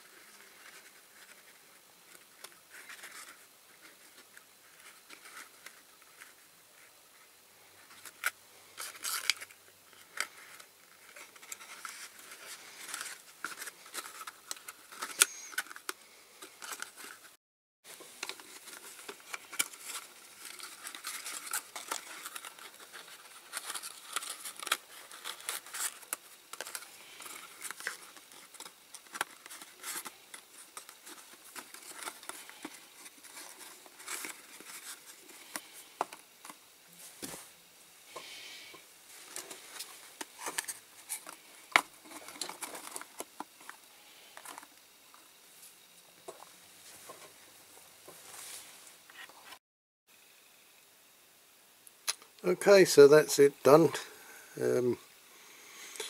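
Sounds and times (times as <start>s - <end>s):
small parts clicking and rustling: 7.8s - 17.3s, 17.9s - 36.6s, 39.2s - 45.2s.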